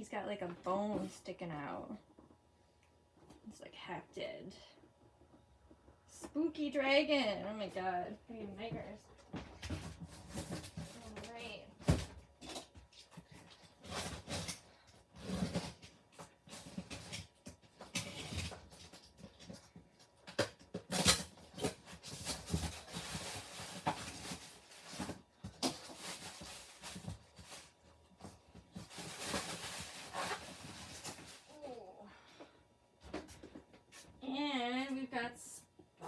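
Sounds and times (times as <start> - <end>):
packaging crackling and rustling: 9.8 - 31.8.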